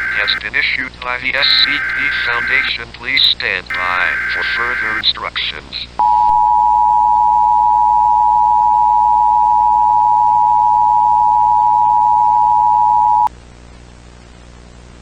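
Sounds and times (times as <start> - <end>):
two-tone alarm drone: 0.0 - 0.4, 1.4 - 2.7, 3.7 - 5.0.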